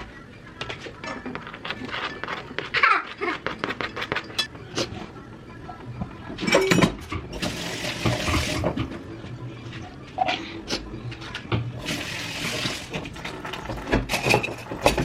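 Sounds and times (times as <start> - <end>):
water running from a tap: 7.4 - 8.8, 11.8 - 14.0
utensils and pots clicking: 12.7 - 15.0.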